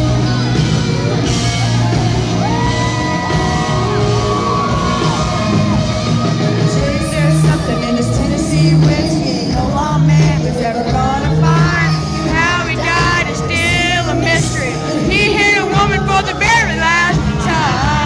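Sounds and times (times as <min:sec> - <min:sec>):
audience whoops and shouts: 0:00.0 - 0:09.5
live band playing: 0:00.0 - 0:18.0
woman singing: 0:02.3 - 0:18.0.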